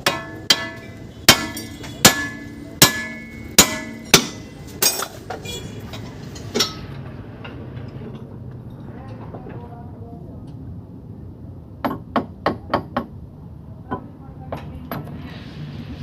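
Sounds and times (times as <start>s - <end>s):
hammer striking metal: 0.0s - 5.2s.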